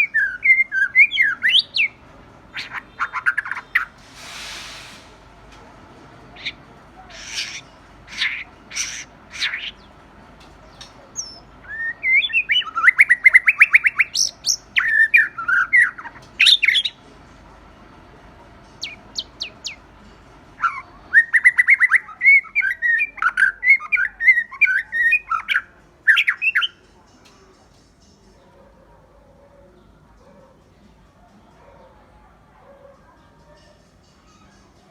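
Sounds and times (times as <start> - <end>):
songbird singing: 0.0 - 4.1, 4.7 - 34.9.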